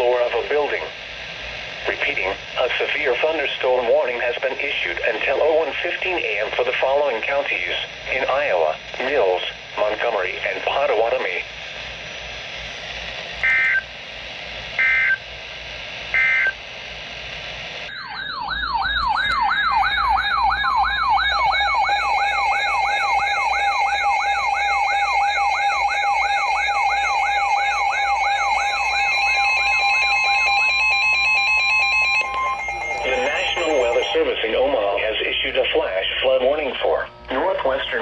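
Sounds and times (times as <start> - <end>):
steady long alarm tone: 0.0 - 38.0
two-tone data bursts: 13.4 - 13.9, 14.8 - 15.3, 16.1 - 16.6, 17.9 - 38.0
warbling siren-like alert tone: 17.9 - 34.9.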